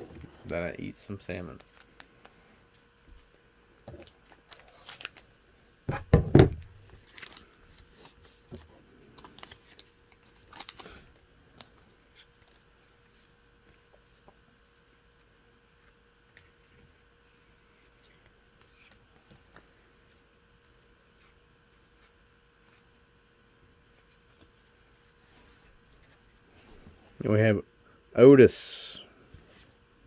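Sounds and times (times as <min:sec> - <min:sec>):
cards being handled: 0:01.5 - 0:15.0
card wrapper tearing and crinkling: 0:04.3 - 0:05.3, 0:06.8 - 0:07.5, 0:09.2 - 0:11.0.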